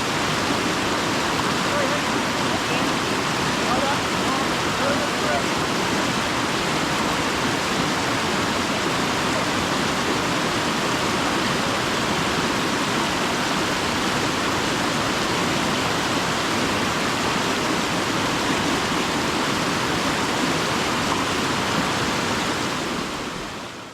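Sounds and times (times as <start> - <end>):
river water rushing over rocks: 0.0 - 23.9.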